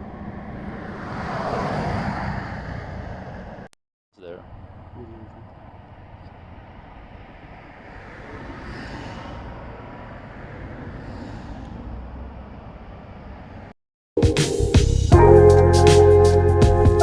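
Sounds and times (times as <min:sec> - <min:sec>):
road traffic passing: 0:00.0 - 0:17.0
loud music: 0:14.2 - 0:17.0.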